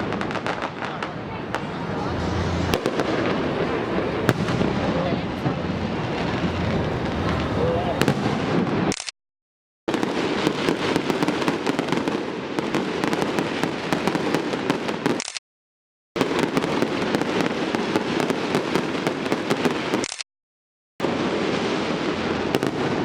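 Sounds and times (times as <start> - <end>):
fireworks bursts and crackling: 0.0 - 8.3
steady rumble: 0.8 - 8.2.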